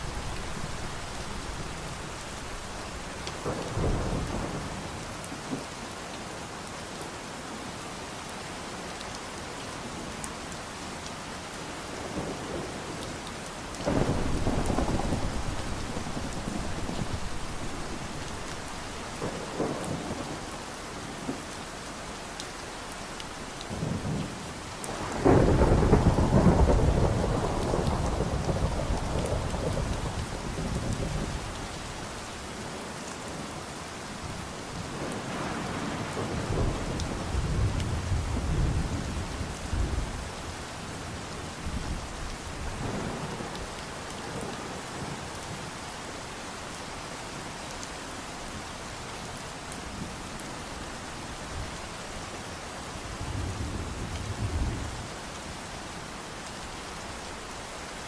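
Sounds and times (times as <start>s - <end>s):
steady rain: 0.0s - 58.0s
thunder rolling: 13.9s - 20.0s.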